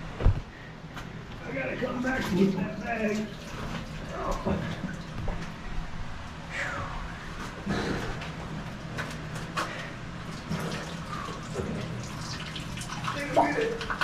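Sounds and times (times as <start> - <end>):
water drips: 10.2 - 14.0.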